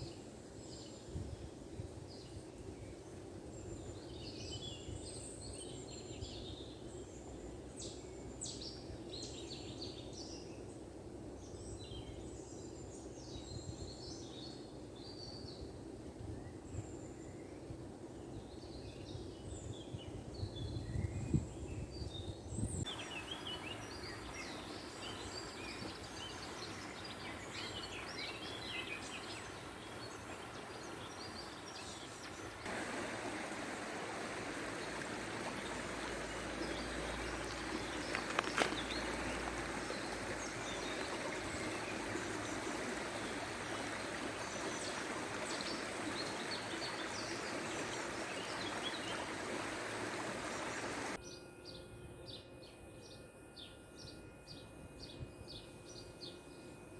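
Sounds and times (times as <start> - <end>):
small birds chirping: 20.6 - 51.2
flowing stream: 22.8 - 51.2.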